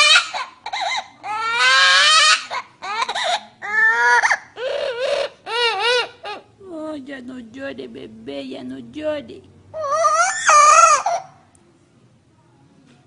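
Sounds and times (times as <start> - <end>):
parrot mimicking baby crying: 0.0 - 6.6, 9.7 - 11.5.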